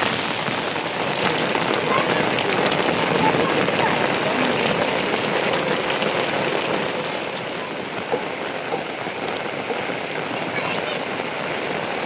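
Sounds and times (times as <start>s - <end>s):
heavy rain falling: 0.0s - 12.0s.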